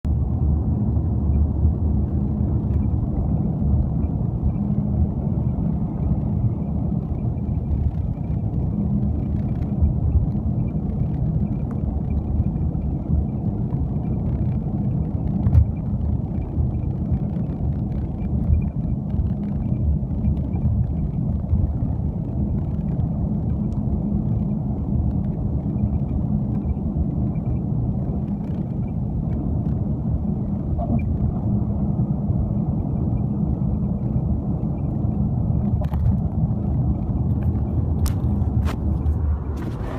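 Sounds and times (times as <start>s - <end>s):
road and suspension rumble: 0.0s - 39.9s.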